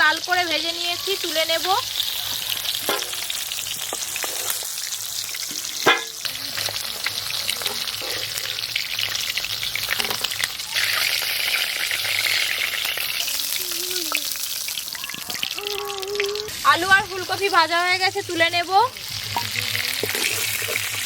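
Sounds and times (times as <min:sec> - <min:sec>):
oil sizzling in pan: 0:00.0 - 0:21.0
utensil knocking against pan: 0:05.8 - 0:06.2.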